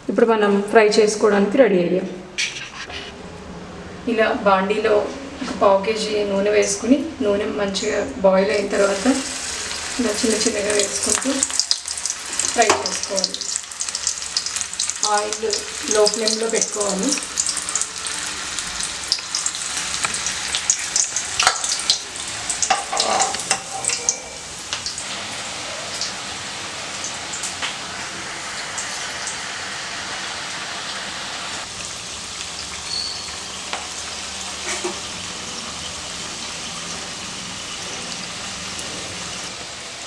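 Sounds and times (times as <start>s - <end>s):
batter deep-frying in hot oil: 8.6s - 40.0s
oil crackling and popping: 8.8s - 23.6s.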